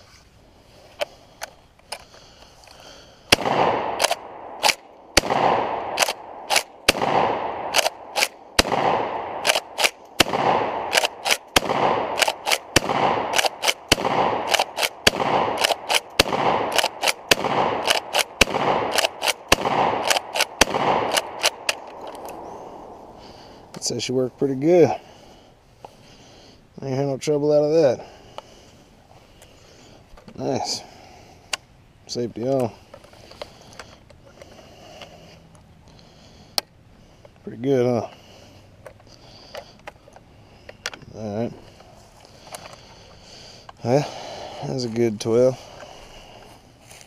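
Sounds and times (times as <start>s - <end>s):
shotgun shots: 3.3s - 24.0s.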